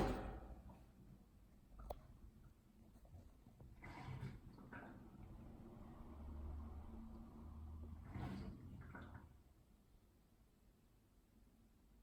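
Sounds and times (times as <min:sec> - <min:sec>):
faint dishwasher hum: 0:00.0 - 0:10.6
dishwasher water swishes: 0:03.2 - 0:09.6.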